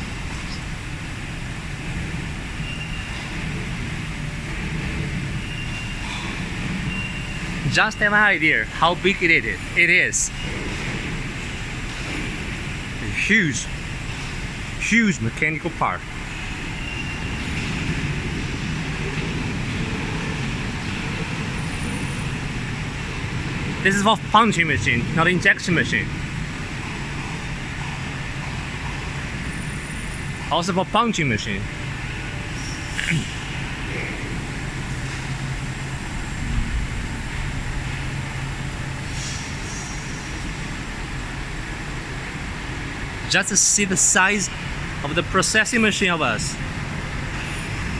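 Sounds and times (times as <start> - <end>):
workshop machinery drone: 0.0 - 47.9.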